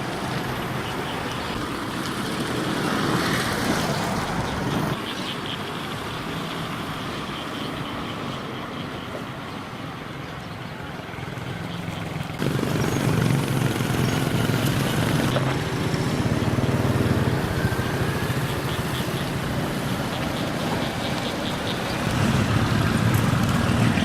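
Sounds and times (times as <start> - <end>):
engine humming: 9.2 - 24.0.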